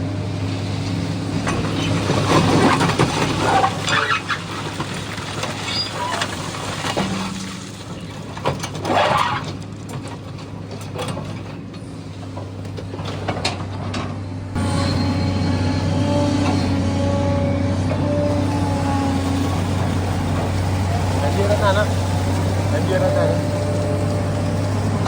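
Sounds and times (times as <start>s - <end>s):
excavator diesel engine running: 0.0s - 8.8s, 9.6s - 25.0s
metallic clanks and squeaks: 1.5s - 4.5s, 5.4s - 7.4s, 8.0s - 11.6s.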